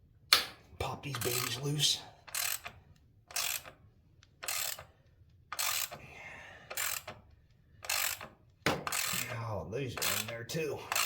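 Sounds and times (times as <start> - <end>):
ratchet wrench clicking: 1.2 - 1.6, 2.2 - 6.0, 6.7 - 7.2, 7.8 - 9.4, 10.0 - 11.0.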